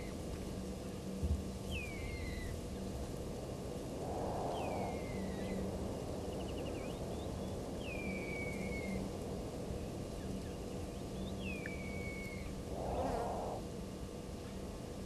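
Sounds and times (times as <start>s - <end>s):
animal whistled calls sliding downward: 4.1s - 5.6s, 12.0s - 13.6s.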